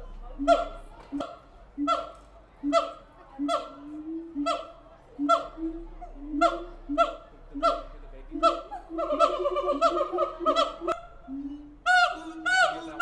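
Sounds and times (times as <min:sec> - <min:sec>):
gibbon whooping calls: 0:00.4 - 0:13.0.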